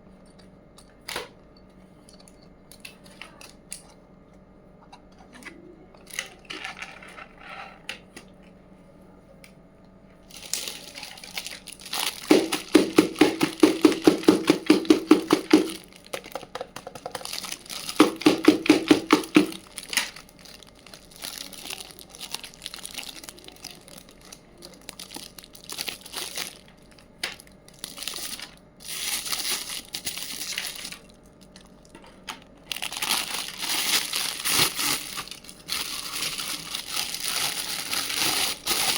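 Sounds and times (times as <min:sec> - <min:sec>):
plastic packaging crinkling: 0:10.2 - 0:38.9
rapid ripping of wrapping: 0:10.3 - 0:16.1, 0:17.2 - 0:31.6, 0:32.6 - 0:38.9.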